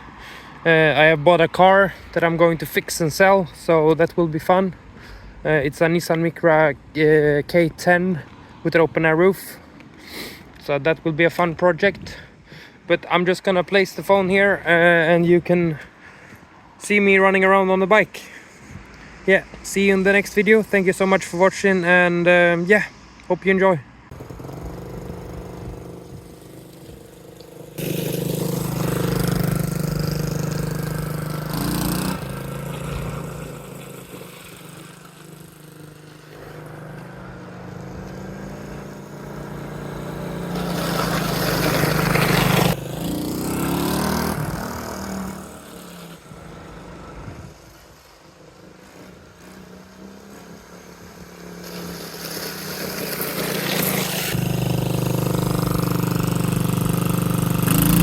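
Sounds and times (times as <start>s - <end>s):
small engine running roughly: 24.1s - 47.1s, 51.6s - 58.0s.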